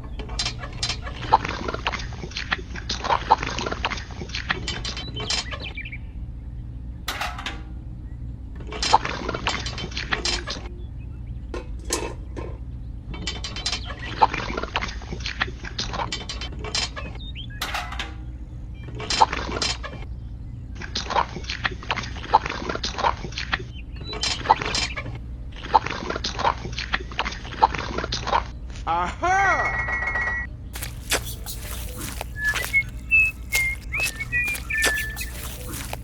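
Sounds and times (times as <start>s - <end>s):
gritty scraping and clicking: 30.8s - 36.0s.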